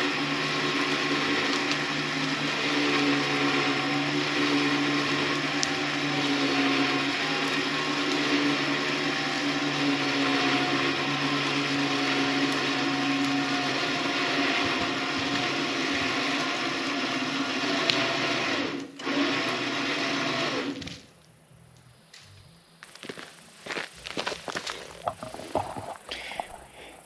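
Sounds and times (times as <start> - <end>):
electric motor running: 0.0 - 21.0.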